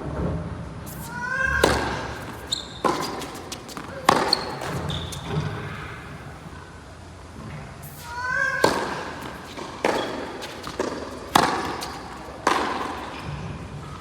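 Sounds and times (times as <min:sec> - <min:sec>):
tennis ball struck by rackets: 0:01.5 - 0:05.7, 0:08.5 - 0:13.4.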